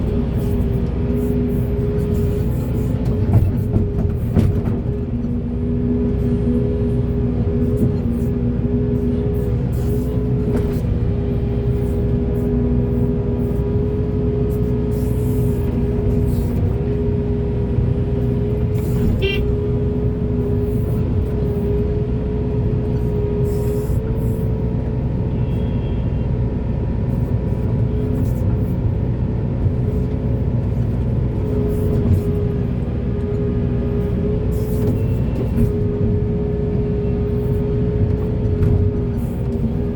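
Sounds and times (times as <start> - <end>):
excavator diesel engine rumbling: 0.0 - 39.9.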